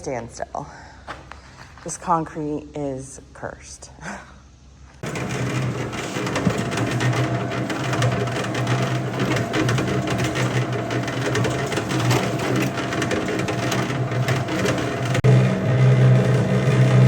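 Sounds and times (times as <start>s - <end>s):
concrete floor grinder running: 5.0s - 17.0s.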